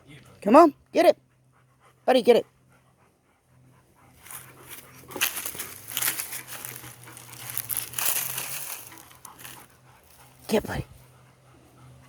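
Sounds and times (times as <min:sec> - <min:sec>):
cart crunching over rough ground: 0:04.2 - 0:10.6.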